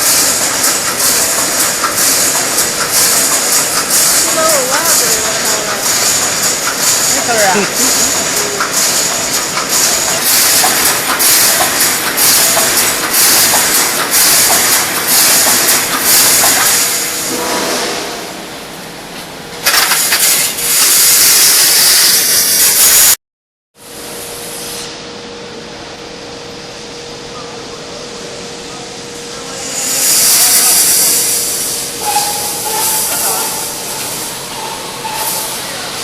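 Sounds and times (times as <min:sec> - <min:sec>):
welding machine hissing bursts: 0:00.0 - 0:17.4, 0:19.6 - 0:23.2, 0:29.6 - 0:36.0
steady machine hum: 0:00.0 - 0:19.6, 0:23.8 - 0:36.0.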